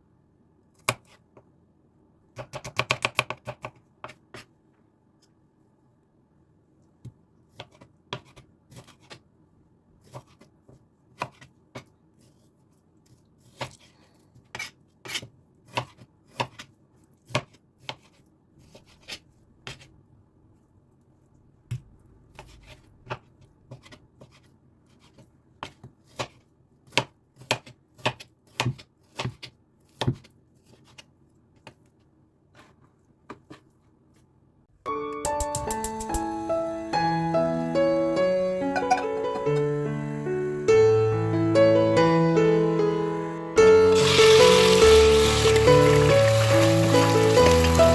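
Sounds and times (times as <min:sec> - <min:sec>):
knife chopping on cutting board: 0:02.4 - 0:04.5, 0:07.5 - 0:09.2, 0:10.0 - 0:10.5, 0:11.1 - 0:11.9, 0:14.5 - 0:19.9, 0:25.1 - 0:31.0.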